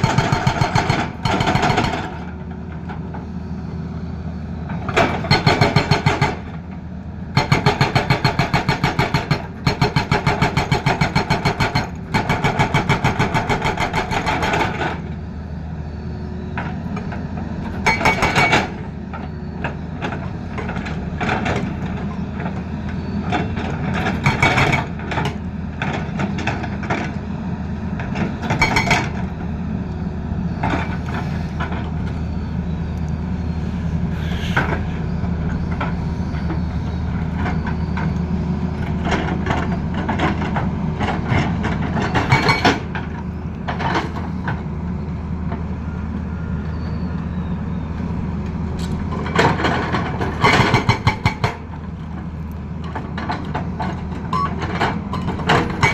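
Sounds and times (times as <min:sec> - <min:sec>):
excavator diesel engine running: 0:00.0 - 0:55.9
hard metallic knocks and clanks: 0:49.2 - 0:51.7, 0:52.9 - 0:55.9.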